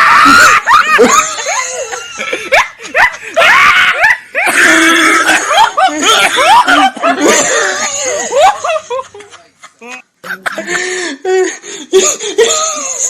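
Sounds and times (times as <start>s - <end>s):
people shrieking and laughing: 0.0s - 10.0s.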